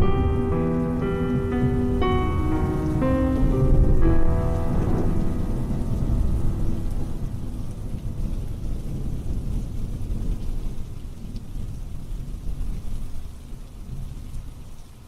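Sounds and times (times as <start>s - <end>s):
piano music: 0.0s - 9.8s
low rolling thunder: 0.0s - 14.2s
steady rain: 0.0s - 15.0s.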